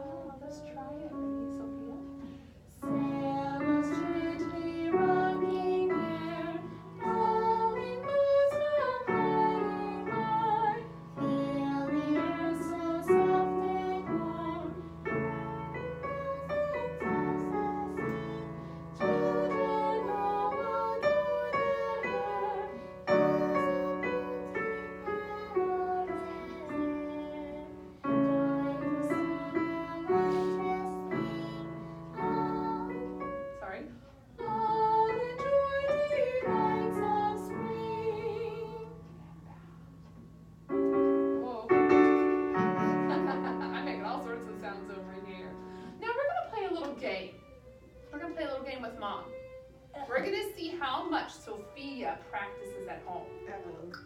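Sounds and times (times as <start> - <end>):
piano chords: 0.0 - 54.0
voices singing in unison: 2.8 - 33.2.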